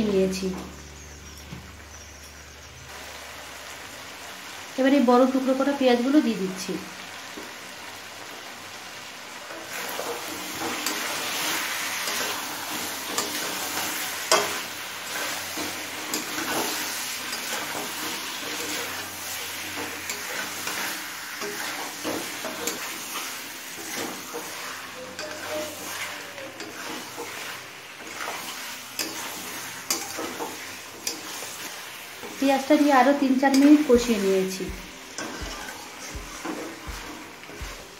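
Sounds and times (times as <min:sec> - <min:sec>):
food sizzling in a pan: 0:00.0 - 0:37.9
spatula scraping a pan: 0:09.5 - 0:37.9.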